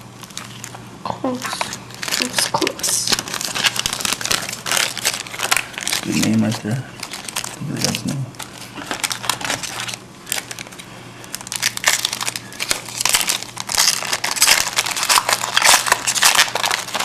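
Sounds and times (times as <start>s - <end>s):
card pack wrapper crinkling: 0.2s - 17.0s.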